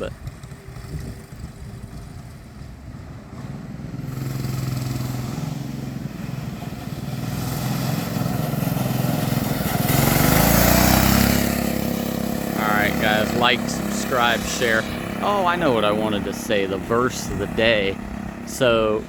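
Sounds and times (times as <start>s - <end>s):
minibike engine running: 0.0s - 19.0s.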